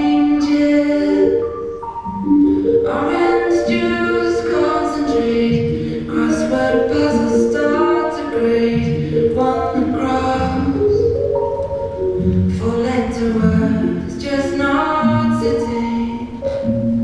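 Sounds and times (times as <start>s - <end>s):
voices singing in harmony: 0.0s - 11.1s.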